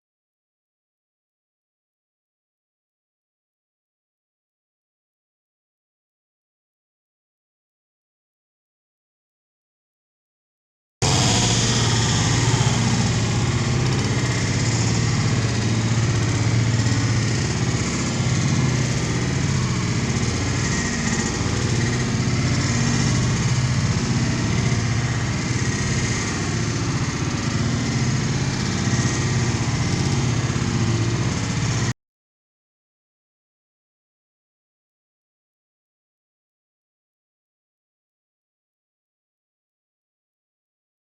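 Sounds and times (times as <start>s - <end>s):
engine running steadily: 11.0s - 31.9s.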